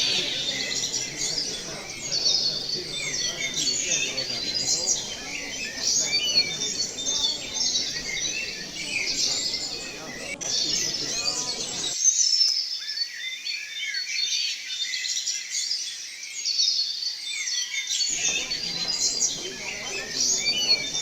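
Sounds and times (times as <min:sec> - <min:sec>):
low background noise: 0:00.0 - 0:12.0, 0:18.1 - 0:21.0
small birds chirping: 0:00.0 - 0:14.0, 0:18.1 - 0:21.0.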